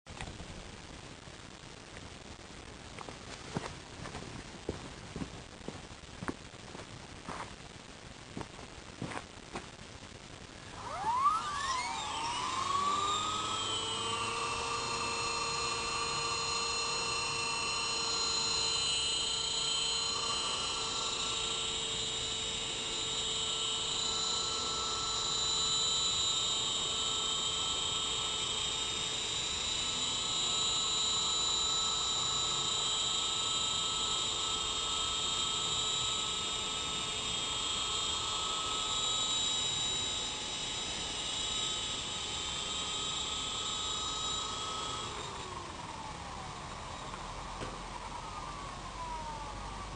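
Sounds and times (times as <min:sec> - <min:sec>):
rc helicopter motor whine: 0:10.6 - 0:49.9.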